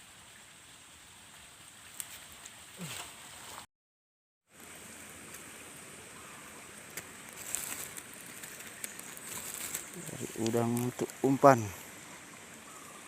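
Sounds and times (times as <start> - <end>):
outdoor water noise: 0.0 - 3.7, 4.4 - 13.0
small clicks and ticks: 6.9 - 11.2.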